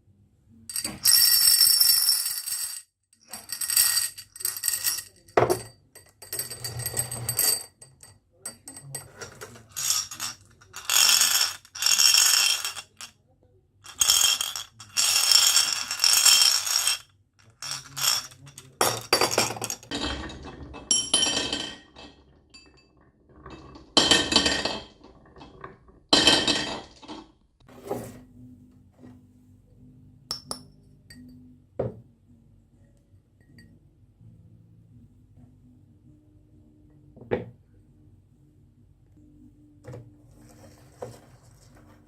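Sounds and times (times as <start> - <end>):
marbles clinking together: 0.7 - 5.7, 9.6 - 13.1, 13.9 - 19.9
marbles rolling down wooden track: 9.2 - 13.1, 13.9 - 21.7.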